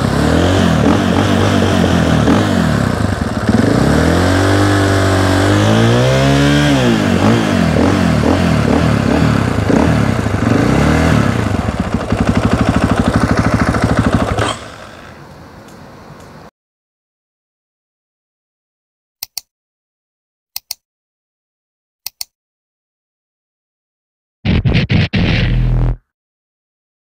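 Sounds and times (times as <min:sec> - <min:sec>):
motorcycle engine revving: 0:00.0 - 0:14.9.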